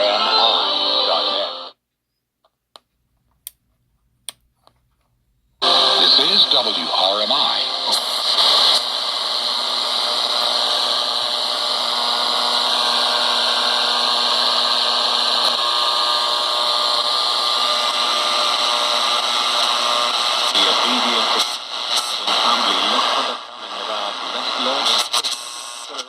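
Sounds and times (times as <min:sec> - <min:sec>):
radio static hiss: 0:00.0 - 0:01.8, 0:05.6 - 0:26.0.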